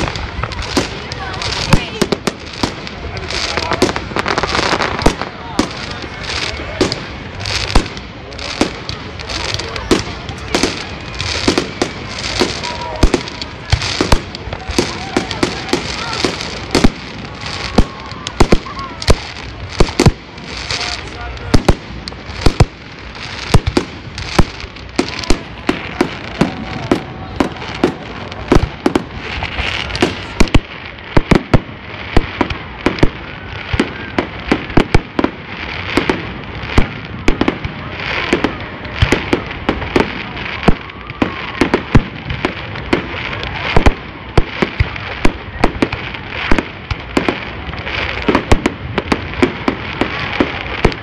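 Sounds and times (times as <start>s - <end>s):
fireworks bursting: 0.0s - 51.0s
fireworks crackling: 0.0s - 51.0s.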